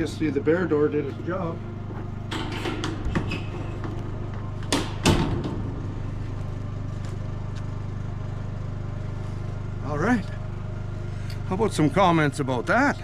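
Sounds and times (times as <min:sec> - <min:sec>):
generator humming: 0:00.0 - 0:13.0
door banging shut: 0:02.3 - 0:04.0, 0:04.6 - 0:06.0
metal door knocking and rattling: 0:02.3 - 0:04.0, 0:04.7 - 0:05.9.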